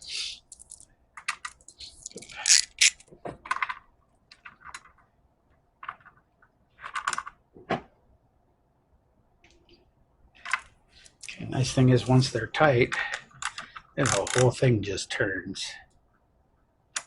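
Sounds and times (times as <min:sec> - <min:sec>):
cable terminals clicking and rattling: 0:00.4 - 0:05.1, 0:05.8 - 0:07.4, 0:12.9 - 0:14.6.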